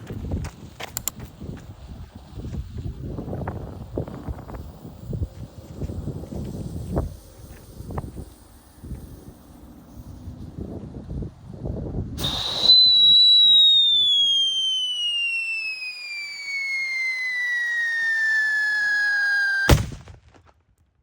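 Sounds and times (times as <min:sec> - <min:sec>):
firecracker fuse hiss: 0:00.0 - 0:10.8, 0:12.1 - 0:19.9
piercing falling whistle: 0:12.2 - 0:19.8
firecracker bang: 0:19.6 - 0:20.5.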